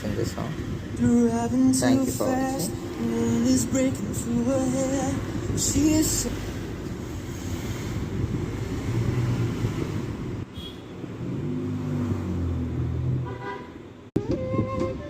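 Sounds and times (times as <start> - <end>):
plucked-string music: 14.2 - 15.0.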